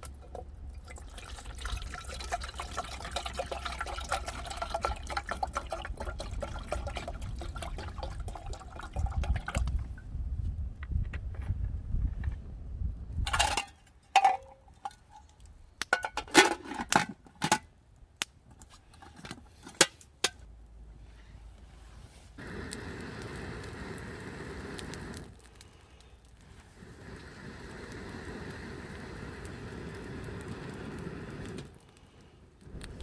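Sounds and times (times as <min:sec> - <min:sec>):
steady hiss: 0:21.1 - 0:33.0.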